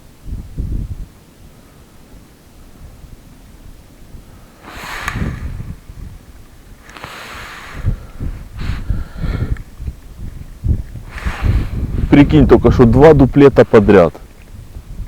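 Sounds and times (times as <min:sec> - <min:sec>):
wind rumble on microphone: 0:00.0 - 0:15.0
person breathing out hard: 0:04.2 - 0:06.1, 0:06.8 - 0:09.6, 0:11.0 - 0:12.1.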